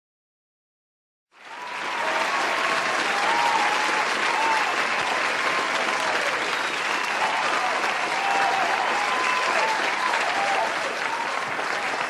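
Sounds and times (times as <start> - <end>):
crowd applauding: 1.3 - 12.0.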